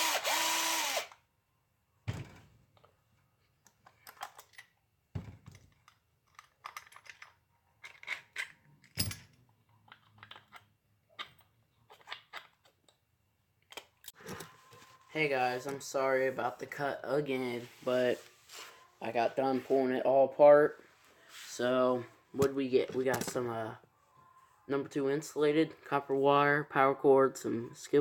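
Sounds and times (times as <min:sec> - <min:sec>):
small parts clicking and rattling: 0:03.6 - 0:04.8, 0:05.4 - 0:13.0.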